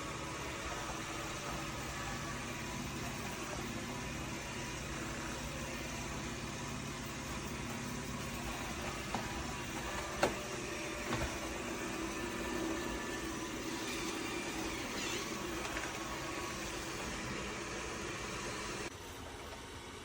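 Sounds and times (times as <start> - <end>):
robot vacuum motor hum: 0.0 - 19.7.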